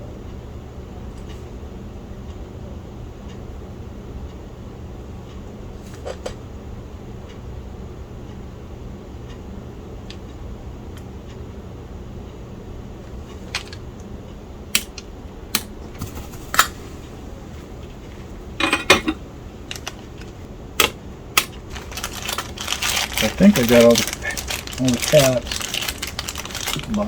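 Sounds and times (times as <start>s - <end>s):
low hum: 6.4s - 27.0s
tools and parts clinking: 18.6s - 19.9s.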